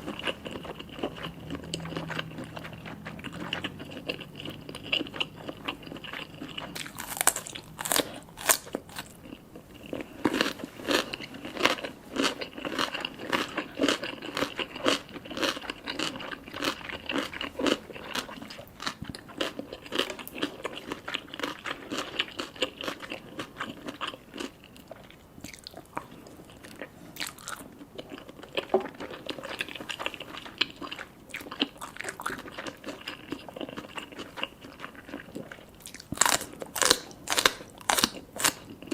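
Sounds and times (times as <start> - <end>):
person chewing food: 0.0 - 38.9.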